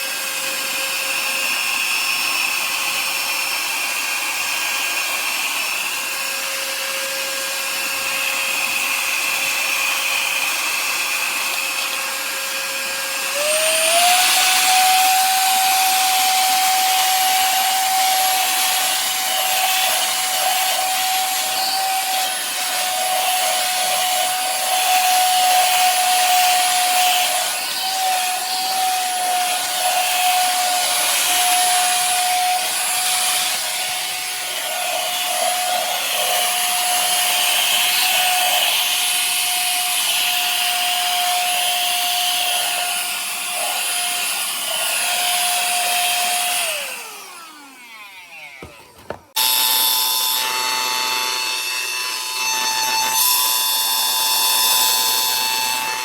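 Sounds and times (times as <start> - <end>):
handheld vacuum cleaner motor whining: 0.0 - 56.0
whirring with steady tones: 0.0 - 56.0
vacuum motor spinning down: 0.1 - 39.9, 40.5 - 56.0.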